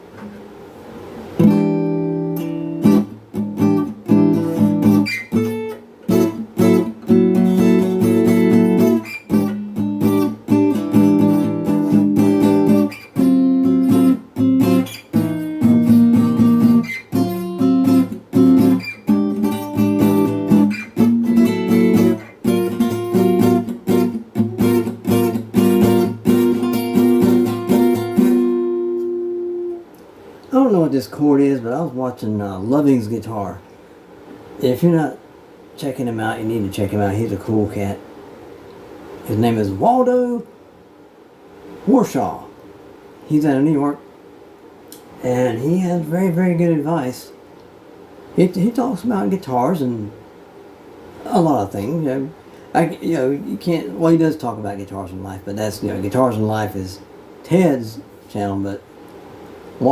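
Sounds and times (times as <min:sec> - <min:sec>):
acoustic guitar strumming chords: 0:01.4 - 0:30.0.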